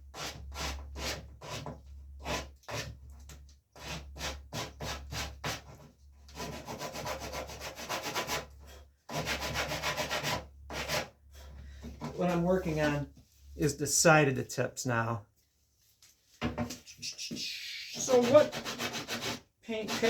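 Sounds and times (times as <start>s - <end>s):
sandpaper rubbing on wood: 17.3s - 20.0s.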